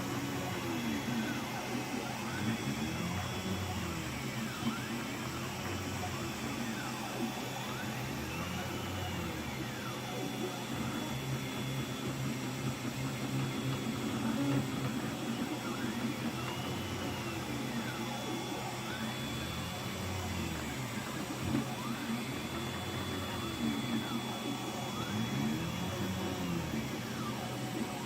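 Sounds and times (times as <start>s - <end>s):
stepper motors whining: 0.0s - 28.0s.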